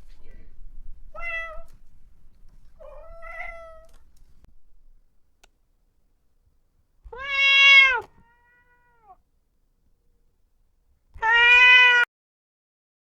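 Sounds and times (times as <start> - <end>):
cat meowing: 1.2 - 1.7, 2.8 - 3.9, 7.1 - 9.2, 11.2 - 12.1.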